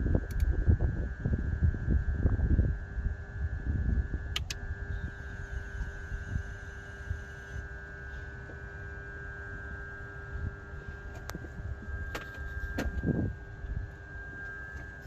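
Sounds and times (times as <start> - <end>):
sharp clicks: 0.3 - 0.5, 4.3 - 4.6.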